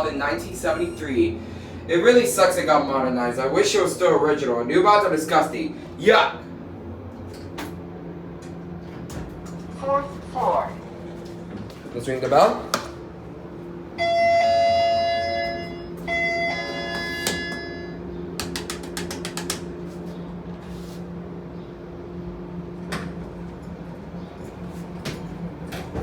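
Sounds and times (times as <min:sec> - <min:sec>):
steady low hum: 0:00.0 - 0:26.0
elevator alarm bell ringing: 0:13.9 - 0:18.3.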